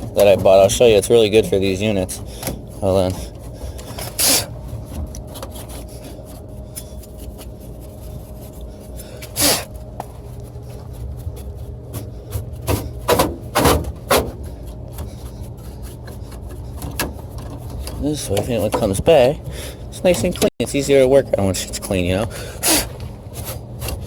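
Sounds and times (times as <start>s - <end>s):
scrubbing and rasping: 0.0s - 20.4s, 22.4s - 24.0s
low hum: 0.0s - 24.0s.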